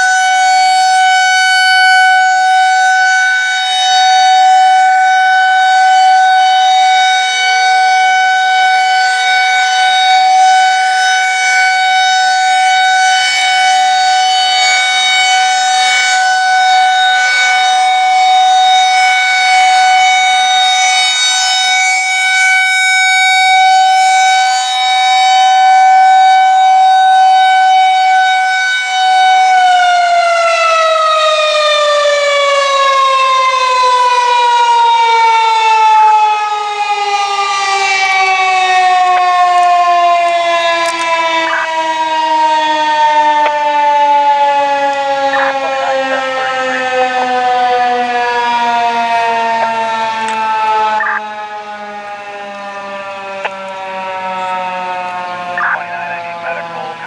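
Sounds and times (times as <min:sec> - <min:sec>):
warning siren steady tone: 0:00.0 - 0:57.0.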